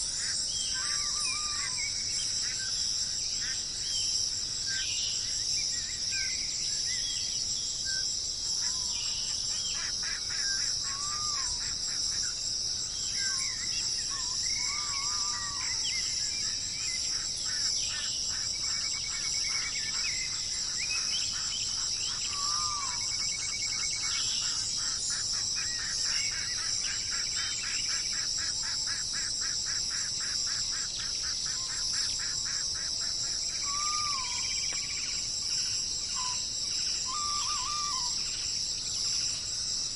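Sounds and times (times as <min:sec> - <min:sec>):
high-pitched insect chorus: 0:00.0 - 0:39.9
birds whistling and trilling: 0:36.1 - 0:39.2.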